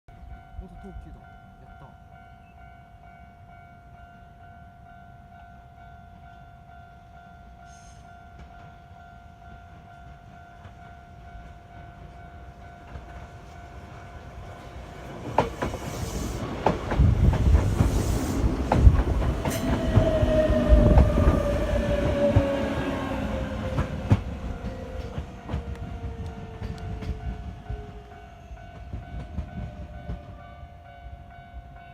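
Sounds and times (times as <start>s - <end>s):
train whine falling in pitch: 12.7s - 30.7s
train wheels clacking over rail joints: 15.2s - 22.6s
level crossing warning signal: 19.0s - 30.9s.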